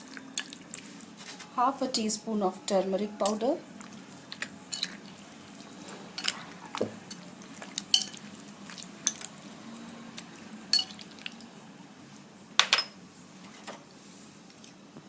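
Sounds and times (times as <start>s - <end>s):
spoon clinking against bowl: 4.7s - 5.0s, 7.9s - 8.2s, 10.7s - 11.1s.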